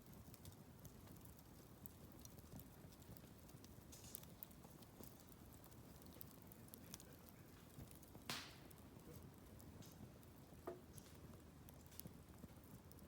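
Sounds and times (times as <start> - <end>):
wood bonfire crackling: 0.0 - 13.0
hissing pop: 8.3 - 8.7.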